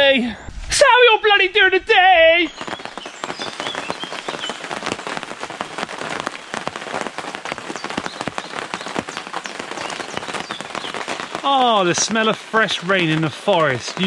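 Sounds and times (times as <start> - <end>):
steady hiss of rain: 0.0 - 14.0
raindrops hitting close by: 0.8 - 14.0.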